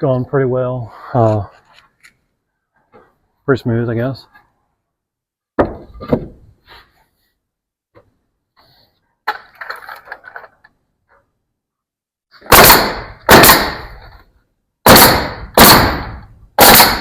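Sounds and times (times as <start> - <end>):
boards knocking and rattling: 5.6 - 6.6
nail gun firing: 12.4 - 14.1, 14.8 - 17.0.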